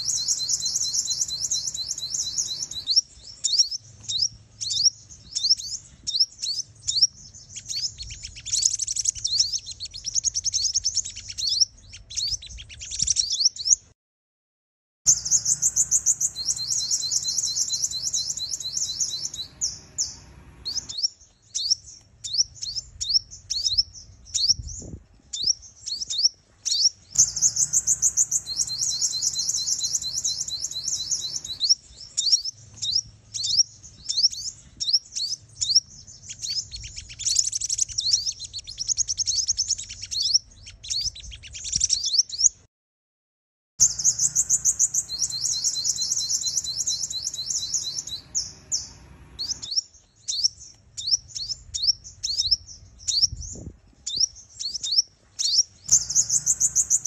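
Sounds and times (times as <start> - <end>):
bird chirps and trills: 0.0 - 13.9, 15.1 - 42.6, 43.8 - 57.0.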